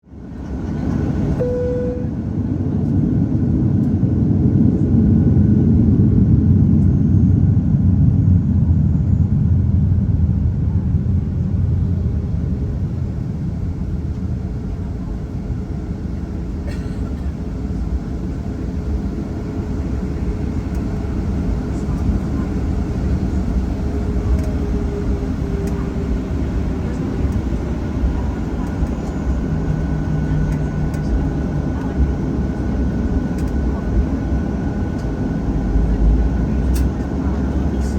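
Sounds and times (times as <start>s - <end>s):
airplane engine rumble in cabin: 0.1s - 37.9s
brief tone: 1.4s - 2.3s.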